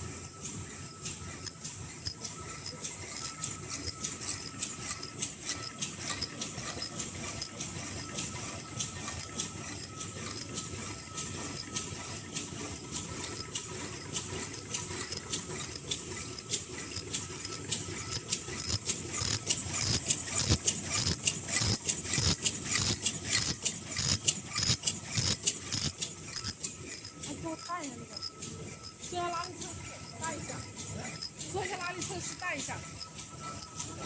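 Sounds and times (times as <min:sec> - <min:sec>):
machine humming: 0:00.0 - 0:34.0
sharp mechanical clicks and clatter: 0:00.0 - 0:34.0.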